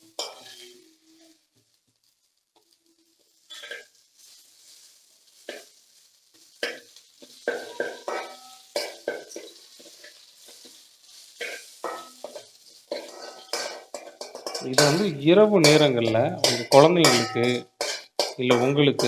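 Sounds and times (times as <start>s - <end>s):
leaves sizzling in oil: 0.0s - 19.0s
spatula scraping pan: 0.1s - 0.8s, 3.5s - 4.4s, 6.6s - 19.0s.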